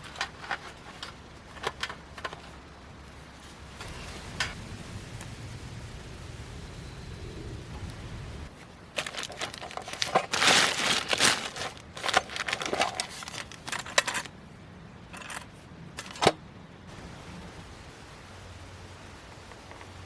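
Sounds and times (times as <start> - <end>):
material crinkling and rustling: 0.0 - 4.2, 8.5 - 14.3, 15.1 - 16.4.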